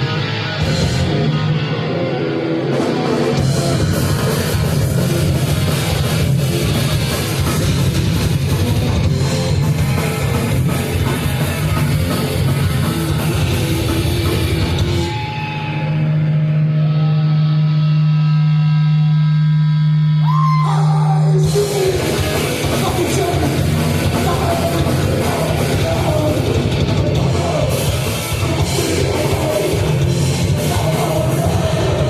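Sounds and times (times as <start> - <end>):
distorted electric guitars: 0.0 - 32.0
fast drum kit: 2.6 - 15.2, 21.4 - 32.0.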